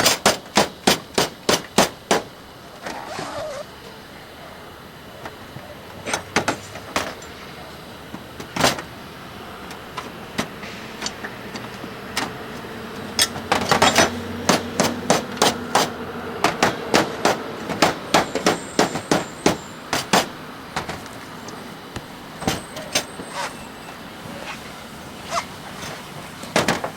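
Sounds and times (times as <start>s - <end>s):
hammer striking copper roofing: 0.0s - 2.4s, 13.2s - 21.2s, 22.4s - 23.2s, 26.5s - 26.9s.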